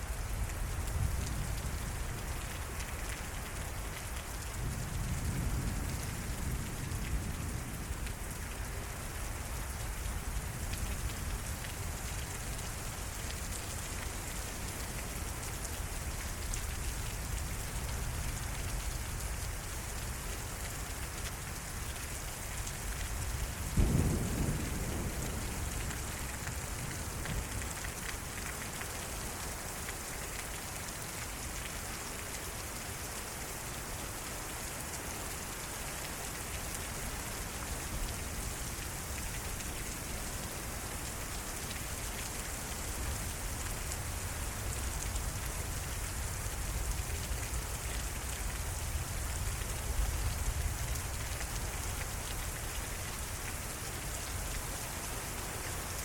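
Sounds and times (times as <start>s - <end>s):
heavy rain pouring: 0.0s - 56.0s
thunder clap and rumble: 23.7s - 27.6s.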